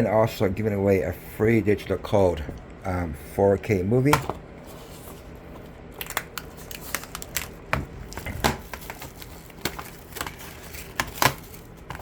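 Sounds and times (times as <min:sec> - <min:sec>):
plastic wrapping crinkling: 0:04.7 - 0:12.0.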